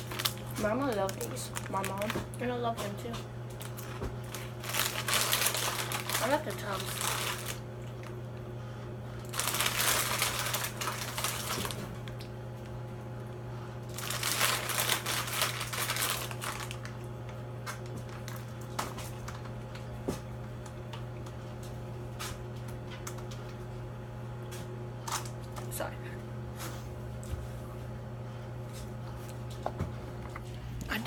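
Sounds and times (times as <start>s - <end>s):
packaging crinkling and rustling: 0.0s - 8.1s, 9.3s - 12.3s, 13.9s - 19.5s
steady low hum: 0.0s - 31.0s.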